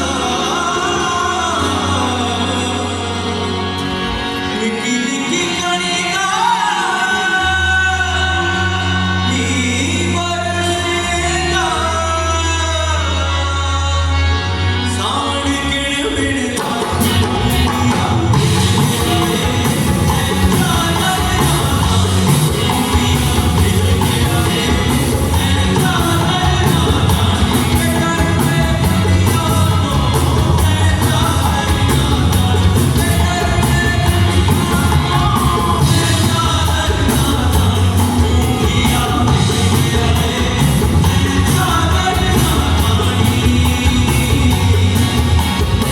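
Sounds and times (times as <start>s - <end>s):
folk instrumental accompaniment: 0.0s - 45.9s
live band music: 0.0s - 45.9s
singers holding long notes: 0.0s - 45.9s
drums steady beat: 16.6s - 45.9s.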